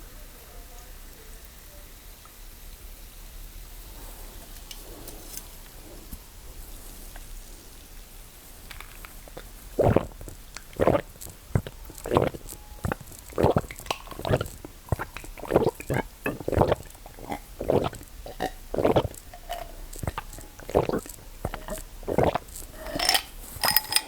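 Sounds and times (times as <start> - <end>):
wet gulps and swallows: 8.3 - 24.0.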